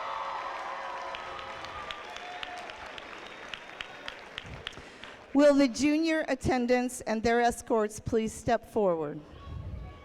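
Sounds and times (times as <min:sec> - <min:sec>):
crowd cheering and shouting: 0:00.0 - 0:02.8
people clapping: 0:00.0 - 0:05.4.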